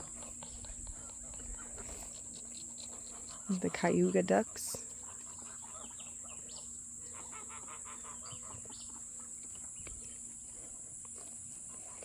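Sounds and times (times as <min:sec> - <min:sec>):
insects droning: 0:00.0 - 0:12.0
poultry calling: 0:00.0 - 0:12.0.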